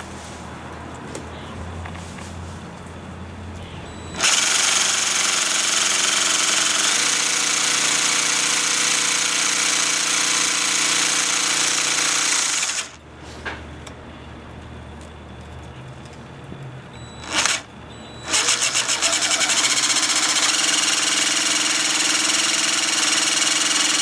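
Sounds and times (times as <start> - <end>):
jigsaw cutting ceramic tile: 4.1 - 13.0, 17.2 - 17.6, 18.2 - 24.0.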